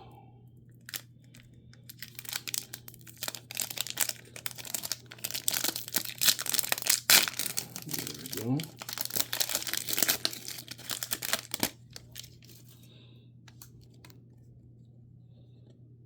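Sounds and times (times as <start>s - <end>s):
plastic packaging crackling: 0.8s - 12.8s.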